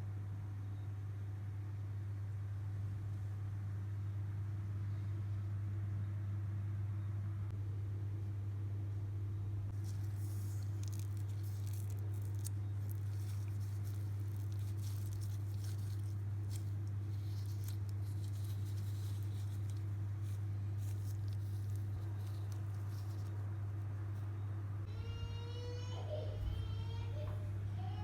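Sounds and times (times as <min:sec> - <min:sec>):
steady low hum: 0:00.0 - 0:28.0
hands ticking and rustling: 0:09.7 - 0:23.8.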